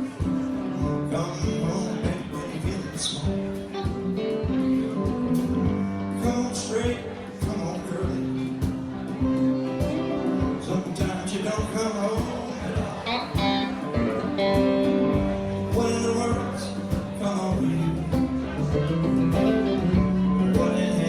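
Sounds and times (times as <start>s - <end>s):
bass line: 0.0s - 21.0s
drums keeping a beat: 0.0s - 21.0s
guitar: 0.0s - 21.0s.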